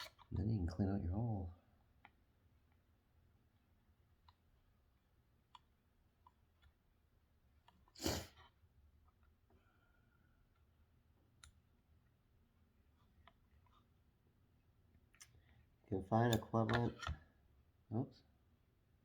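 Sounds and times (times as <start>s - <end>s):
short breathy puff: 8.0s - 8.4s.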